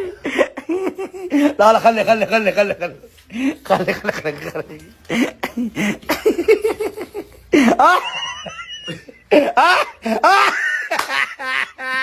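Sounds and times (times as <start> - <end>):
person laughing: 3.8 - 12.0.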